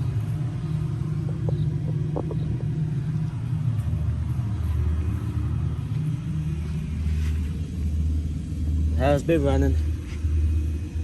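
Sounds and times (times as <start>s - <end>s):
heat pump rumbling: 0.0s - 11.0s.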